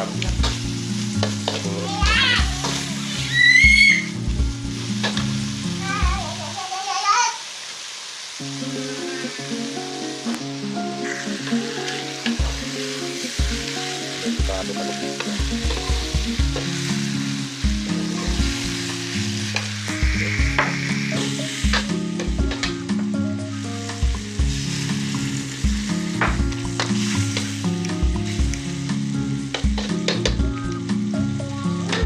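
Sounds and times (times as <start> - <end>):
vegetables sizzling in hot oil: 0.0 - 32.0
spatula scraping a pan: 0.4 - 3.3.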